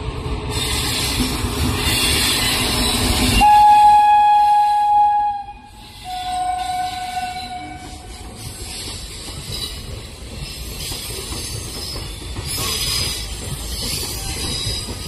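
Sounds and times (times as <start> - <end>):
train rumbling: 0.0 - 15.0
locomotive horn: 3.4 - 8.1.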